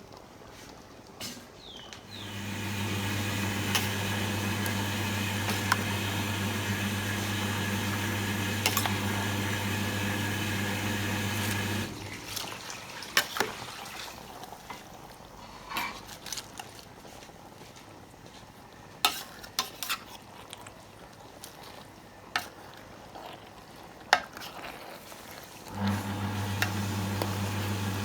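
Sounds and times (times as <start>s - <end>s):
appliance motor humming: 2.1s - 12.2s, 25.7s - 28.0s.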